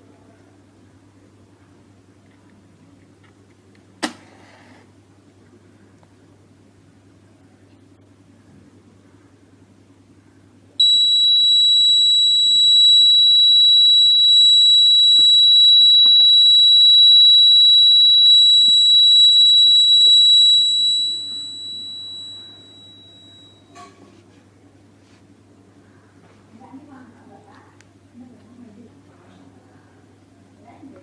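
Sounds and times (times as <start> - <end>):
high-pitched electronic buzzer tone: 10.8 - 23.7.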